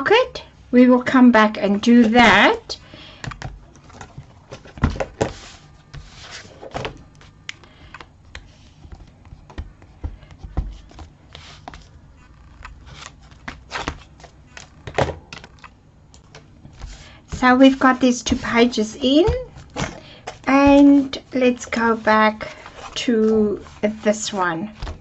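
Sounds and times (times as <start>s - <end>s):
paper rustling: 3.7s - 14.8s.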